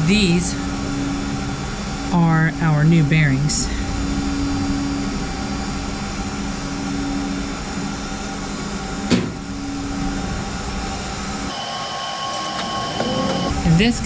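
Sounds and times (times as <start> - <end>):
machine hum: 11.5 - 13.5.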